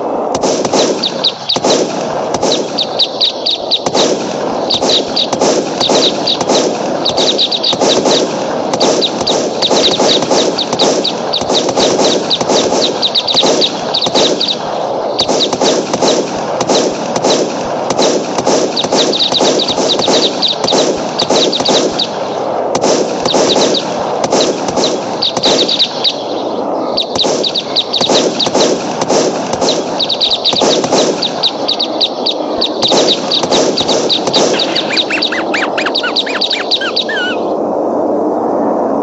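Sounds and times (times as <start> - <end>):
dense crackling din: 0.0 - 39.0
birds chirping: 0.4 - 16.6, 18.4 - 22.5, 23.1 - 23.9, 24.5 - 37.6
low sliding bird calls: 0.9 - 1.7, 2.4 - 15.6, 24.9 - 28.6, 29.7 - 37.6.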